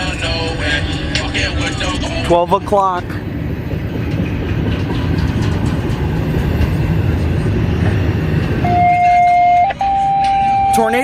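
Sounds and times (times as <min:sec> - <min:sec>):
freight train rumble: 0:00.0 - 0:11.0
tornado warning siren wail: 0:08.5 - 0:11.0.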